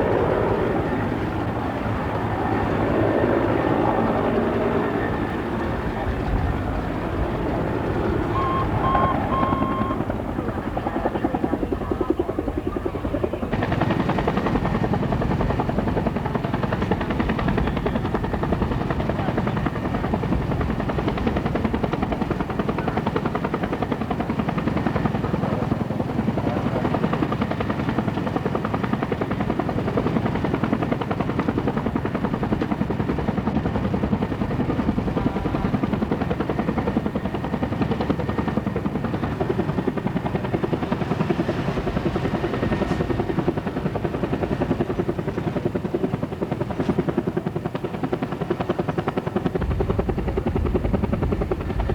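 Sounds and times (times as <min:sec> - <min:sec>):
helicopter rotor and turbine: 0:00.0 - 0:51.9
short high beeps: 0:08.3 - 0:10.0.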